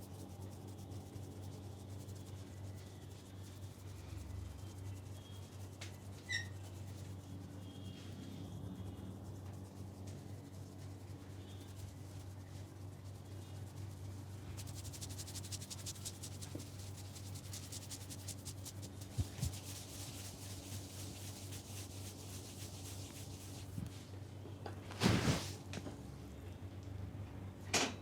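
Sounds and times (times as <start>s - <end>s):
hands rubbing through hair: 9.1s - 24.0s, 24.9s - 25.7s.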